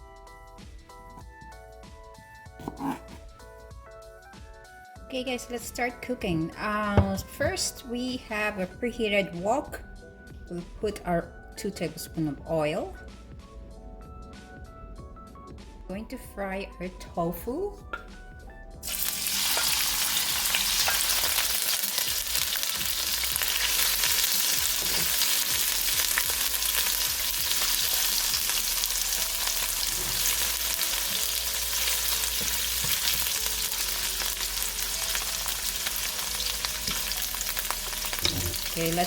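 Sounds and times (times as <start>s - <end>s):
tofu sizzling in hot oil: 18.8s - 39.0s.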